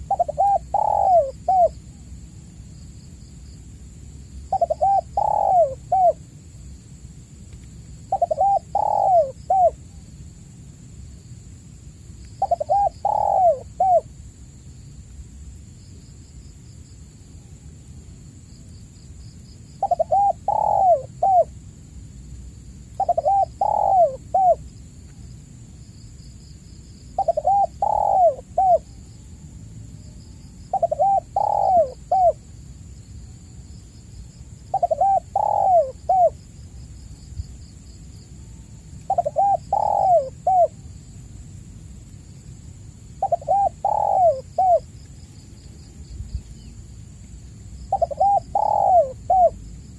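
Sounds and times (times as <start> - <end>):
dove cooing: 0.0 - 1.8, 4.5 - 6.2, 8.1 - 9.8, 12.4 - 14.1, 19.8 - 21.5, 23.0 - 24.6, 27.2 - 28.9, 30.7 - 32.4, 34.7 - 36.4, 39.1 - 40.8, 43.2 - 44.9, 47.9 - 49.6.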